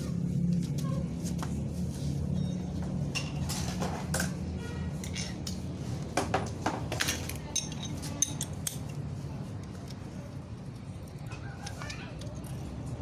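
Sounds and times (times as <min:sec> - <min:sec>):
metal tools clinking: 0:07.0 - 0:09.0.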